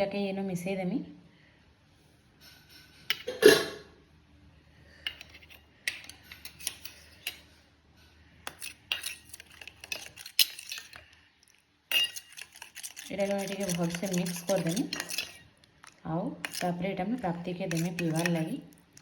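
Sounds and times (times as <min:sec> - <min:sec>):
spoon clinking and scraping: 0:05.0 - 0:07.6, 0:08.4 - 0:19.0
spoon clattering: 0:08.5 - 0:11.1, 0:11.9 - 0:19.0.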